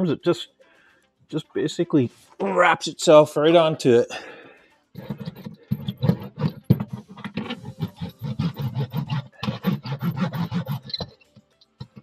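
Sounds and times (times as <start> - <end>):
scraping and rubbing on sheet metal: 5.0 - 11.2.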